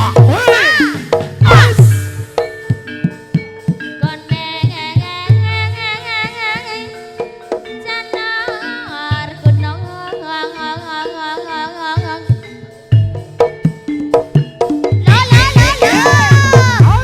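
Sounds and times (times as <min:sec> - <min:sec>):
high wavering melody: 0:00.0 - 0:03.3
ringing gamelan tones: 0:00.0 - 0:17.0.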